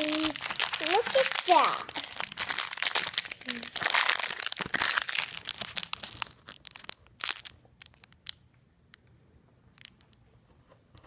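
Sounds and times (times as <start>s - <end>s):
foil wrapper crinkling: 0.0s - 8.4s.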